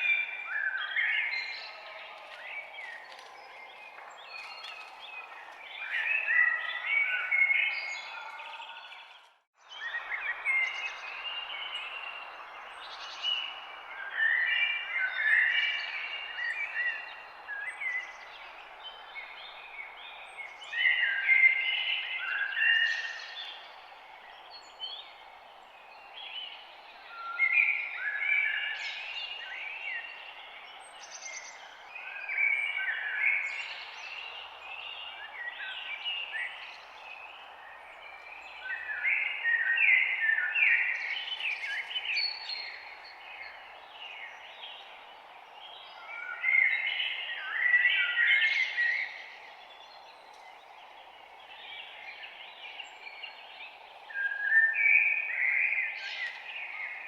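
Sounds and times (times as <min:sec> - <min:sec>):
songbirds chirping and trilling: 0:00.0 - 0:57.0
forest ambience hiss: 0:21.8 - 0:57.0.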